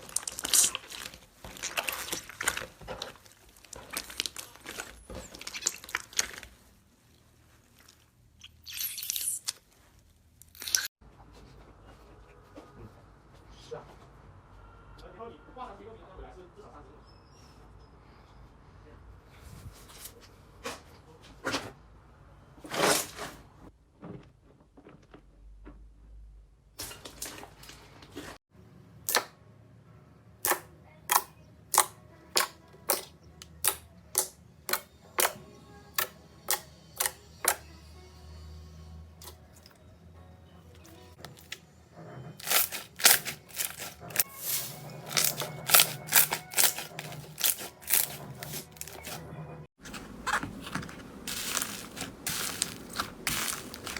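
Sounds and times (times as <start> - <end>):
slime squelching: 0.0 - 10.9, 30.4 - 35.4, 36.0 - 37.6, 41.3 - 41.6, 42.4 - 49.2, 49.8 - 53.9.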